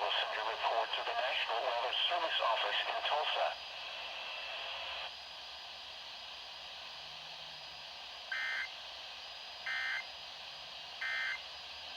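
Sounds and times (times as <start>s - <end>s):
radio hiss: 0.0s - 3.6s.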